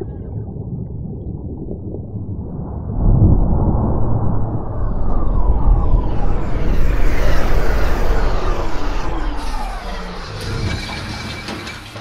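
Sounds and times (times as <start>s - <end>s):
rushing noise with falling whine: 2.3s - 11.5s.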